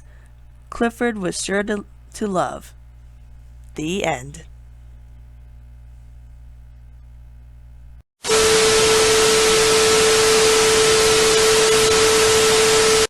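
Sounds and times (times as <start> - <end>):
low steady hum: 0.0 - 8.0.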